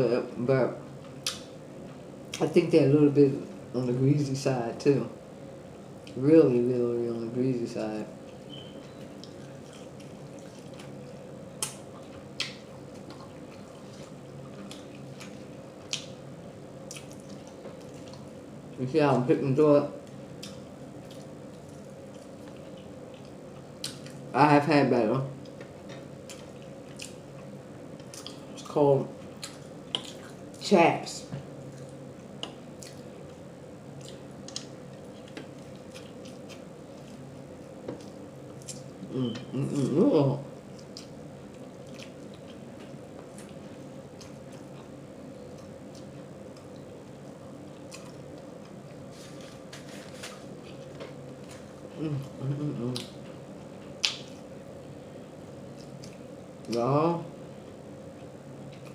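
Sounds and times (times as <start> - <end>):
steady low hum: 0.0 - 58.9
person chewing with mouth smacks: 8.3 - 16.2, 16.8 - 18.4, 25.4 - 28.6, 29.2 - 30.6, 31.6 - 33.4, 34.0 - 39.9, 40.7 - 54.5, 55.7 - 56.8.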